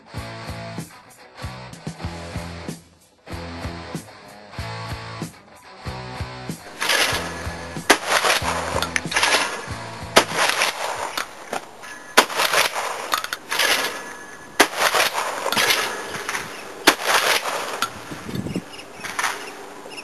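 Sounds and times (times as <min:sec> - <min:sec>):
shotgun shots: 0:06.6 - 0:18.3, 0:18.9 - 0:19.6.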